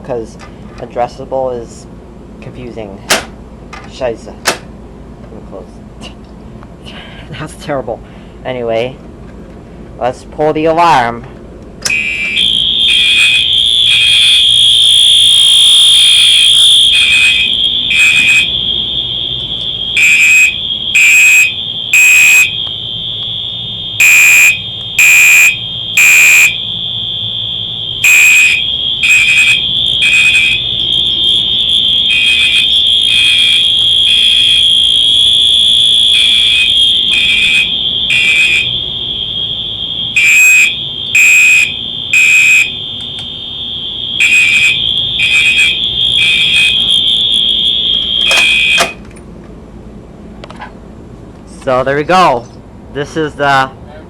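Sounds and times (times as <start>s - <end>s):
fire alarm horn pulsing: 11.8s - 49.0s
steady high-pitched alarm tone: 11.9s - 49.0s.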